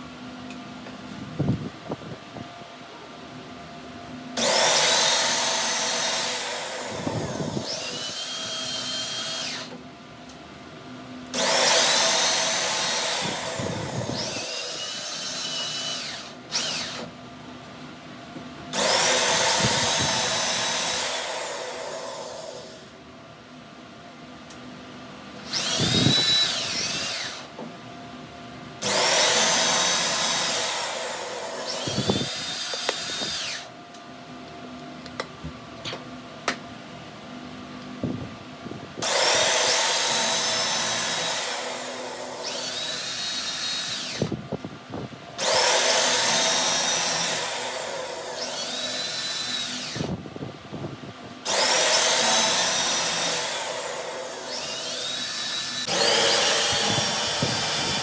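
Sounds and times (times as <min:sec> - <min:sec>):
power tool whining: 0:04.4 - 0:09.8, 0:11.3 - 0:17.2, 0:18.7 - 0:22.9, 0:25.4 - 0:27.6, 0:28.8 - 0:33.7, 0:39.0 - 0:44.4, 0:45.4 - 0:50.3, 0:51.4 - 0:58.0.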